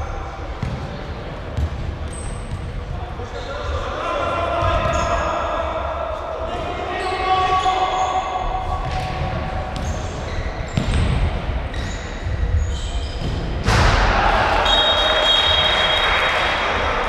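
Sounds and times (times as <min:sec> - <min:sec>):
ball kicks and bounces: 0:00.6 - 0:00.9, 0:10.7 - 0:11.4
shoe squeaks on floor: 0:02.1 - 0:02.6, 0:09.8 - 0:11.1, 0:11.7 - 0:13.5.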